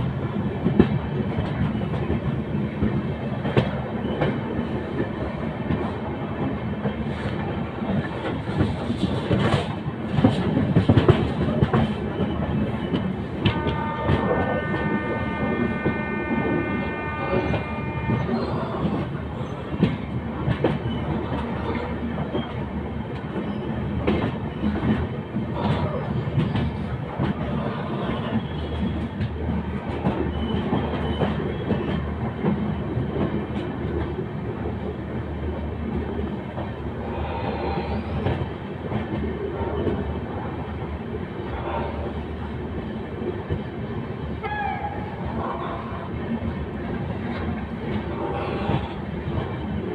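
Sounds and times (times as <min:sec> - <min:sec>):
train rumble with wheels clacking: 0:00.0 - 0:49.9
train horn: 0:13.4 - 0:19.0, 0:44.4 - 0:45.2.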